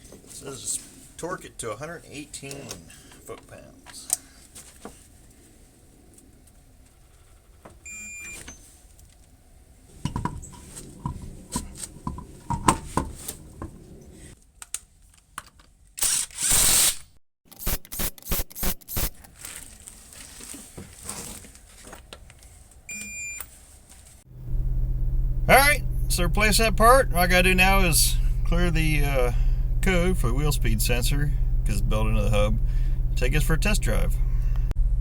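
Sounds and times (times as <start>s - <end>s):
short beep: 22.9s - 23.4s
loud noisy burst: 25.4s - 34.6s.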